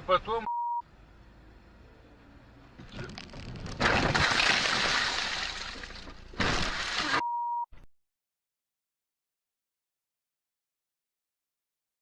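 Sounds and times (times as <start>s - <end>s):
short steady beep: 0.4s - 0.8s, 7.2s - 7.7s
vehicle crash impact: 2.8s - 7.2s.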